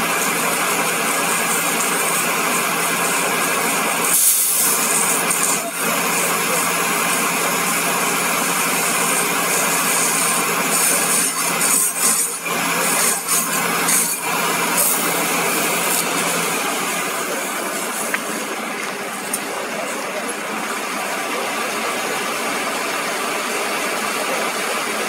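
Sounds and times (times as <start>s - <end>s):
loud hiss: 0.0s - 21.2s
engine idling: 0.0s - 25.0s.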